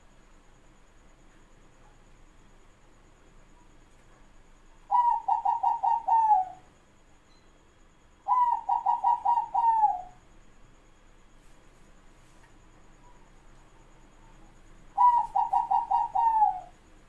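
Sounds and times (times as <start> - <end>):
dove cooing: 4.9 - 6.7, 8.3 - 10.2, 14.9 - 16.8.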